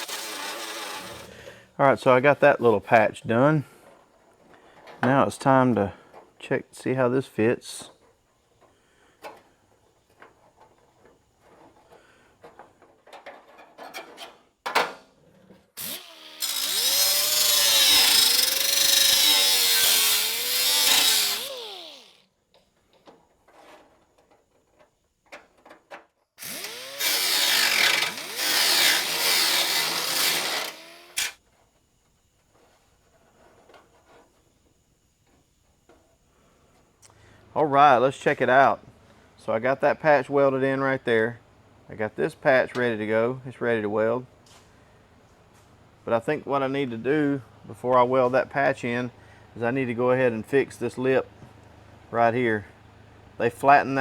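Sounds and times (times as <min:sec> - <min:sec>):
electric grinder grinding metal: 0:00.0 - 0:01.3, 0:15.8 - 0:22.2, 0:26.4 - 0:31.4.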